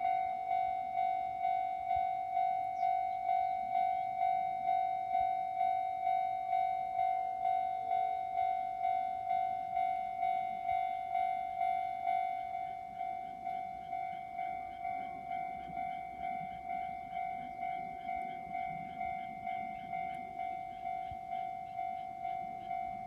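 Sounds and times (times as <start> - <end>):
level crossing warning bell: 0.0 - 23.0.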